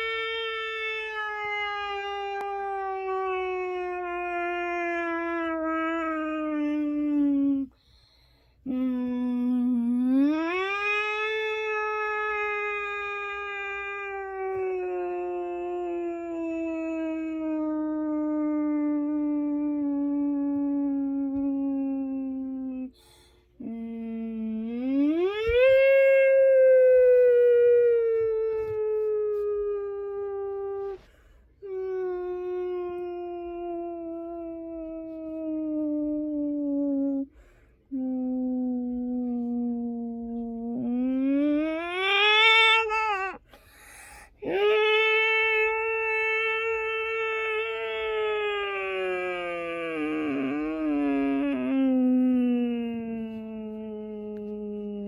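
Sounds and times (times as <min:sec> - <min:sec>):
voice imitating a siren: 0:31.8 - 0:37.3, 0:44.4 - 0:55.0.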